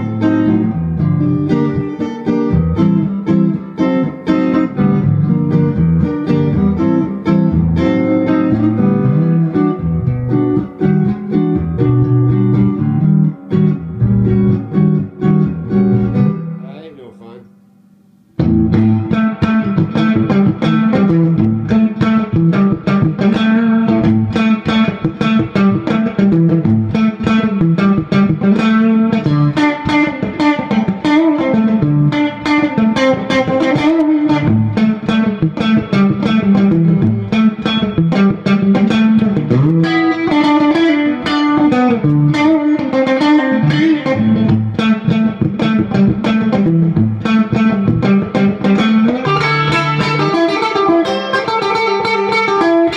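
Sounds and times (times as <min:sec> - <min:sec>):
electric guitar rapidly picked notes: 0:18.4 - 0:52.9.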